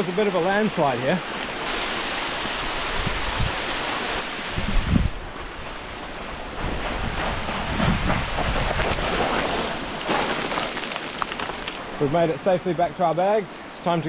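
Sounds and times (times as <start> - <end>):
small waterfall rushing: 0.0 - 6.6
wind buffeting microphone: 2.5 - 9.8.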